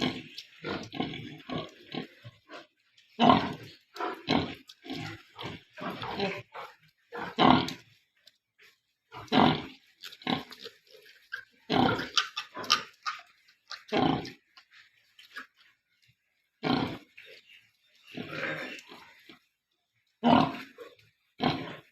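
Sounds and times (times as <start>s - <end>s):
pigs calling: 0.0s - 7.8s, 9.1s - 14.4s, 16.6s - 17.3s, 18.0s - 19.3s, 20.2s - 21.9s.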